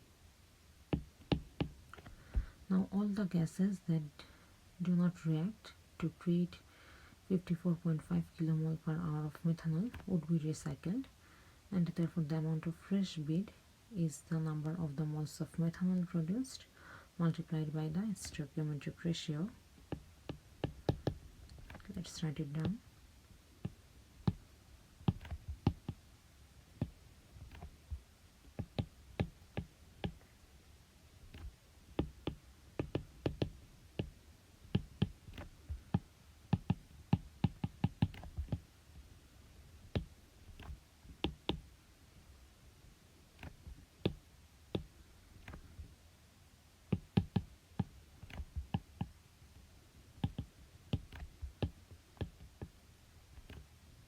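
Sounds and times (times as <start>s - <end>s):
pen clicking and tapping: 1.0s - 2.5s, 19.9s - 22.8s, 23.6s - 24.4s, 25.0s - 26.0s, 26.8s - 30.2s, 31.3s - 38.6s, 39.9s - 41.6s, 43.4s - 44.2s, 44.8s - 45.8s, 46.9s - 49.2s, 50.2s - 52.8s, 53.4s - 53.7s.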